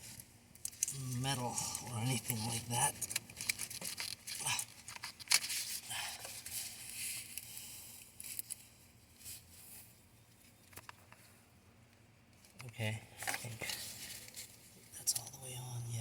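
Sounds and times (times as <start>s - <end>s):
rubber hose clicks and scrapes: 3.0s - 9.4s, 10.4s - 11.4s.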